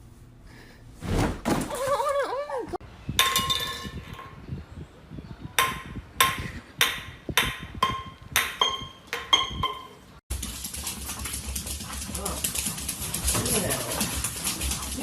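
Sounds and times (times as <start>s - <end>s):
sharp ringing knocks: 5.6s - 10.0s.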